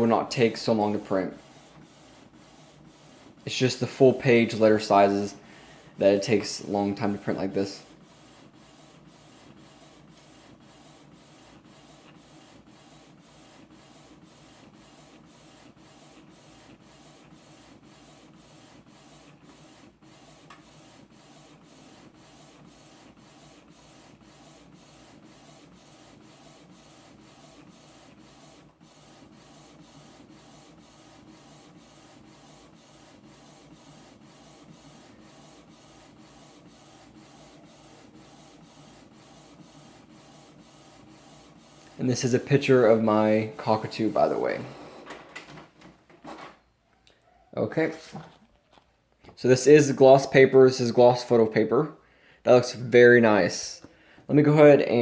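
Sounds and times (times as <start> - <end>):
printer carriage whirring: 0.0 - 46.6.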